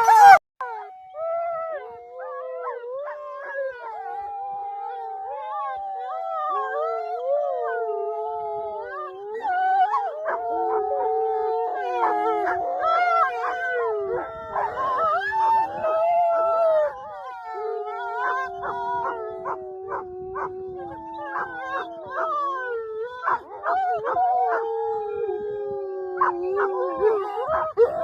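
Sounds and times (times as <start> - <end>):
wolves howling: 0.0 - 28.0
wolves yipping: 23.2 - 24.6.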